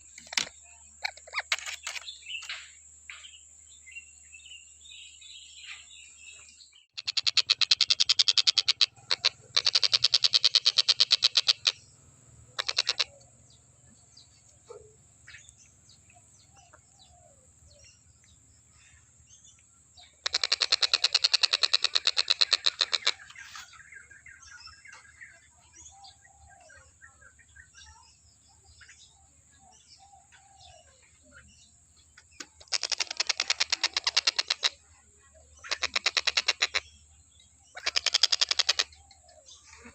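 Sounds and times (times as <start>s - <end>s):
faint bird chirps: 0.0s - 39.9s
kingfisher rattling calls: 0.2s - 2.1s, 7.0s - 13.2s, 20.2s - 23.7s, 32.4s - 34.8s, 35.6s - 36.8s, 37.8s - 39.0s.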